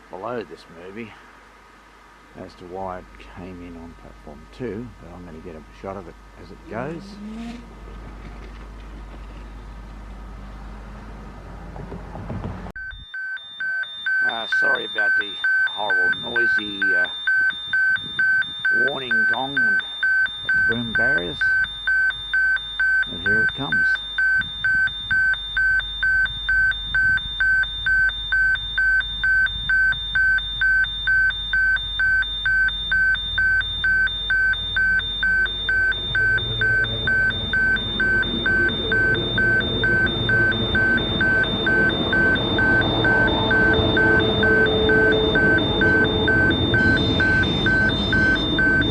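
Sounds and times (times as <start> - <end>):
level crossing warning gong: 13.5 - 21.6, 33.0 - 48.9
train rumble: 35.1 - 48.9.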